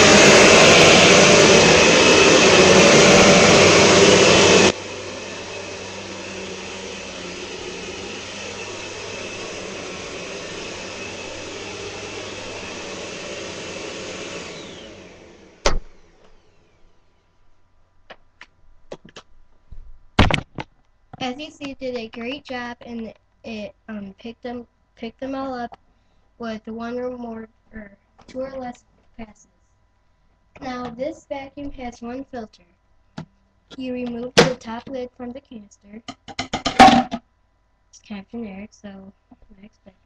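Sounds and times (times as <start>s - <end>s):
vacuum cleaner motor running: 0.0s - 17.0s.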